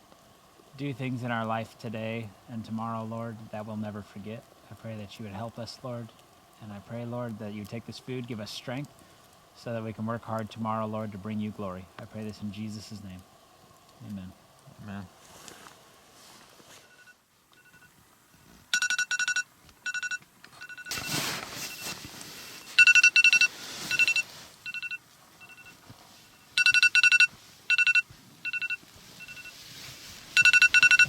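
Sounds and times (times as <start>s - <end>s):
rustling: 12.0s - 31.0s
electronic alarm beeping: 16.9s - 17.9s, 18.7s - 22.0s, 22.6s - 29.6s, 30.4s - 31.0s.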